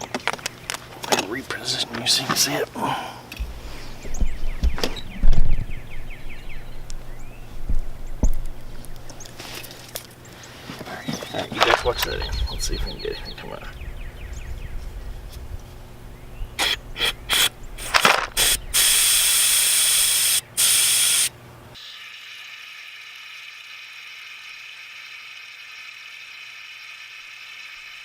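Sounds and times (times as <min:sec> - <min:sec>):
aerosol spray can hissing: 0:16.6 - 0:21.3.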